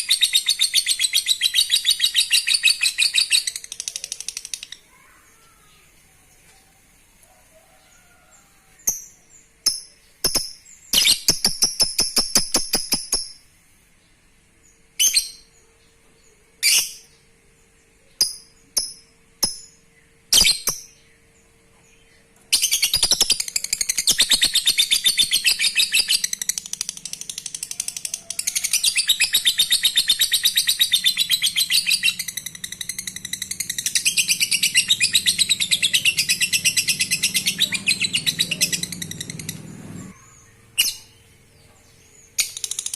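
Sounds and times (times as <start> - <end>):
lovebird chattering trill: 8.9 - 13.4, 22.6 - 41.2.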